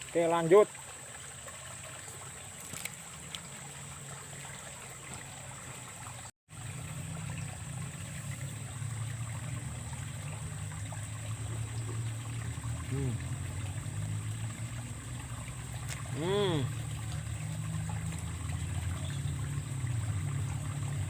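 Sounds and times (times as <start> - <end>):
water trickling: 0.0 - 21.0
low hum: 6.6 - 21.0.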